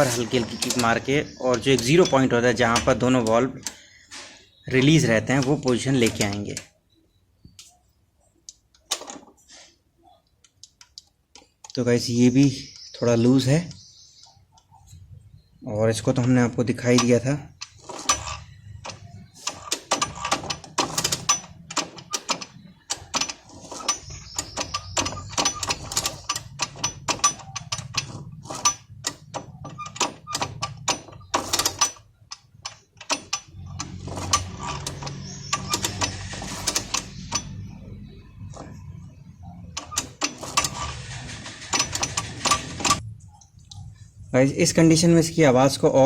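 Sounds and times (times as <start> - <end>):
metallic clicks and clatters: 0.0 - 3.8, 16.0 - 44.0.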